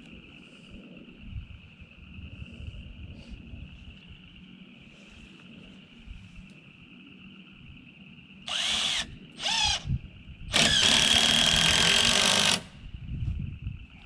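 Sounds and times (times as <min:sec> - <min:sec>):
power drill motor winding up: 0:08.5 - 0:09.8, 0:10.5 - 0:12.8.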